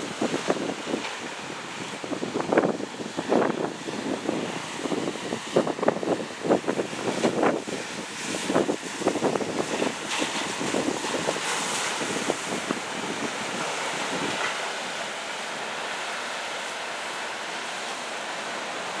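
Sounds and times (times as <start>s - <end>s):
wind buffeting microphone: 0.0s - 15.0s
surf breaking ashore: 0.0s - 19.0s.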